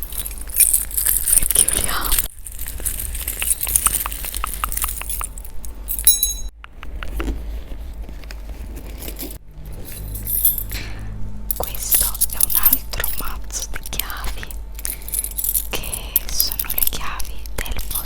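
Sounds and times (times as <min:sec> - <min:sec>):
small metal objects clinking: 0:00.0 - 0:06.5, 0:08.9 - 0:17.2
bright metallic ring: 0:05.9 - 0:06.5.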